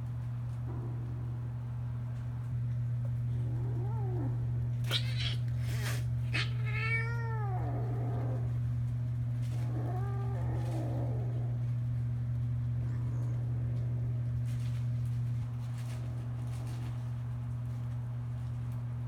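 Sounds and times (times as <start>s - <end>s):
steady low hum: 0.0s - 19.0s
kitten meowing: 4.8s - 7.8s.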